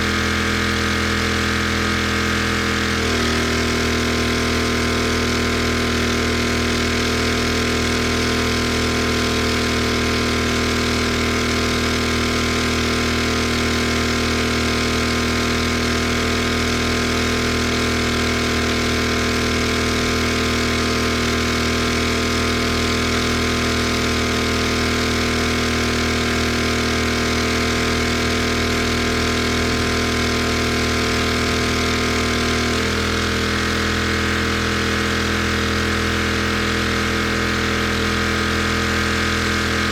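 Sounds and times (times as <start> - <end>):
pressure washer engine running: 0.0 - 39.9.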